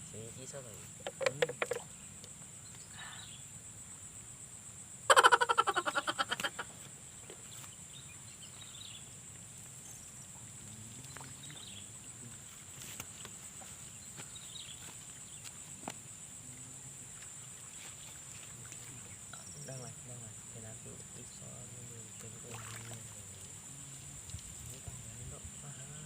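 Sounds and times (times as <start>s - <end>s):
frog pulsing rattle call: 0.9s - 2.2s, 5.0s - 6.8s.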